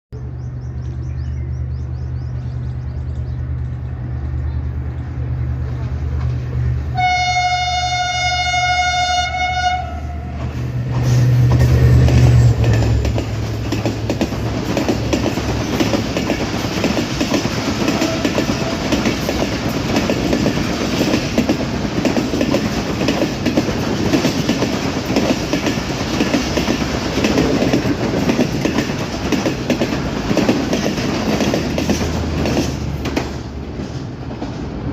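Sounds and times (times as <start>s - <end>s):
train rumbling: 0.2s - 34.9s
train horn blast: 6.9s - 10.5s, 17.8s - 19.2s
wheels clattering over rail joints: 10.4s - 34.9s.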